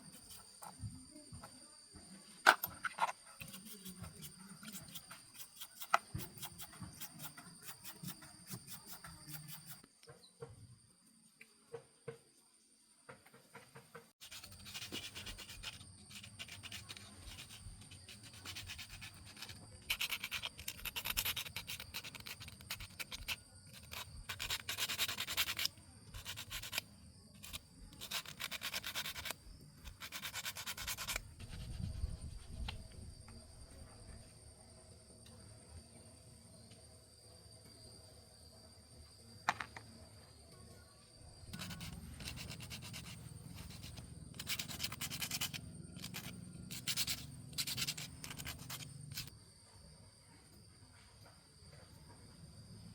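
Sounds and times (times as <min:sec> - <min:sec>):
rapid scraping strokes: 0:41.5 - 0:49.3.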